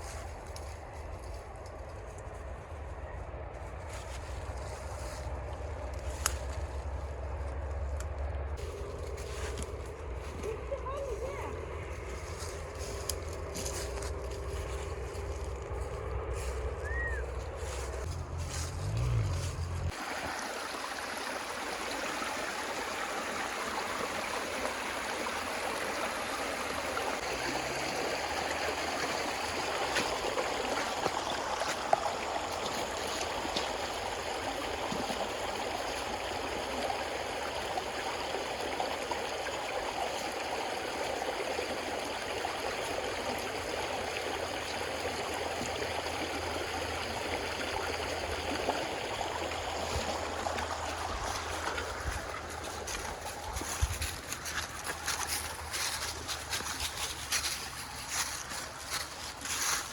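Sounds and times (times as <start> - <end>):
river water rushing: 18.0 - 59.9.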